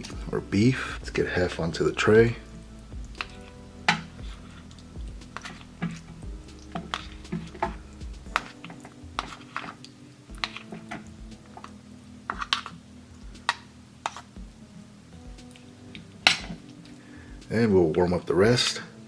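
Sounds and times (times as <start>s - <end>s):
utensil scraping and clinking container: 8.4s - 11.7s.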